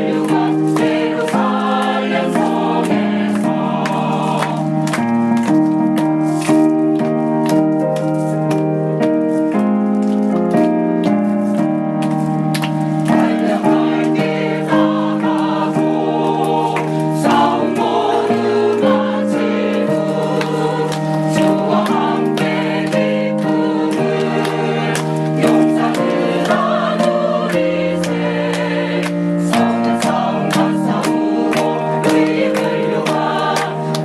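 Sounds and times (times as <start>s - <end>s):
choir singing a hymn: 0.0s - 5.0s, 13.0s - 34.0s.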